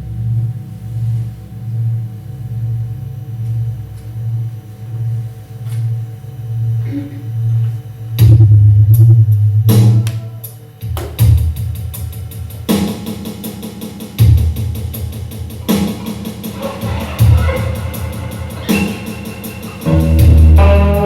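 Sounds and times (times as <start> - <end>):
heavy drum hits: 8.2 - 10.0, 14.2 - 21.0
drum kit music with deep bass: 8.2 - 21.0
fast cymbal pattern: 8.2 - 21.0.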